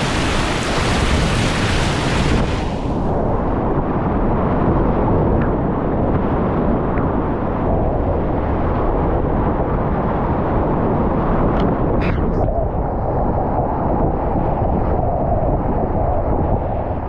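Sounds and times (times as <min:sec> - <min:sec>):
whitewater rapids rushing: 0:00.0 - 0:03.1.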